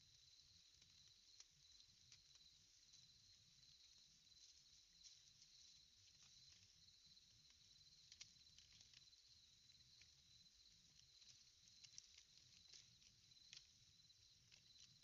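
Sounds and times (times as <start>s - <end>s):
high-pitched insect chorus: 0.2s - 15.0s
faint clicks: 7.4s - 15.0s.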